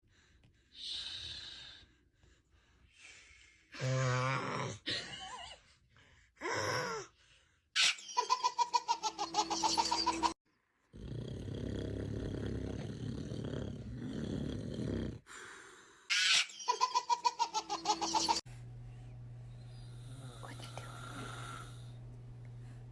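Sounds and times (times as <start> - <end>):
man snoring: 3.8 - 4.8, 10.9 - 15.8, 20.0 - 22.0
baby giggling: 7.8 - 10.4, 16.1 - 18.4.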